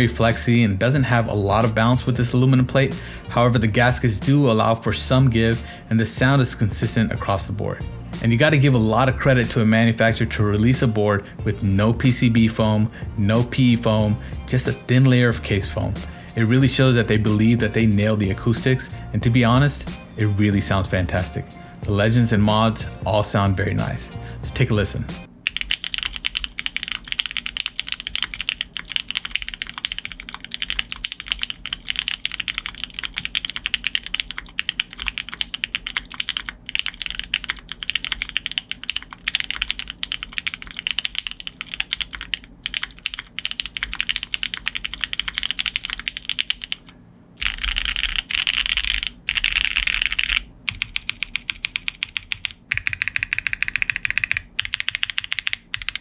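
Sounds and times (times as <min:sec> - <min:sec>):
mechanical keyboard typing: 0:24.8 - 0:56.0.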